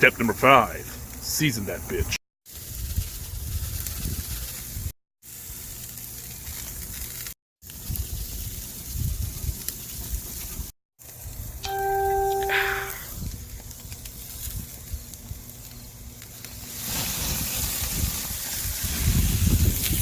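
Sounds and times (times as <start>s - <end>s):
steak sizzling on a grill: 2.5s - 11.4s, 13.5s - 20.0s
wind rumbling on microphone: 2.6s - 4.9s, 7.8s - 10.7s, 17.3s - 20.0s.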